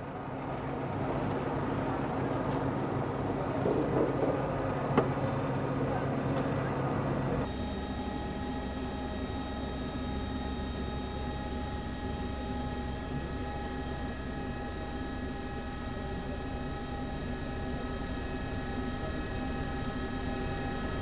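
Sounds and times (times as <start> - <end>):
steady drone of fixed tones: 6.9 - 21.0.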